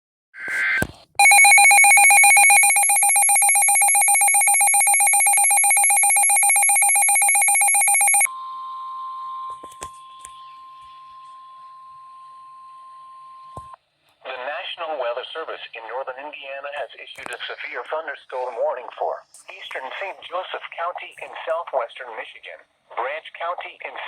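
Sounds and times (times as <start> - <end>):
rapidly pulsing electronic ringing: 1.2 - 8.3.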